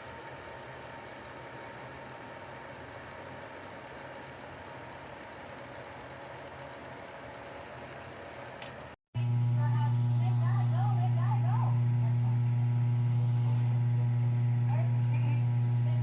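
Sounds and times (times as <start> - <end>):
heater fan whirring: 0.0 - 16.0
low hum: 9.2 - 16.0.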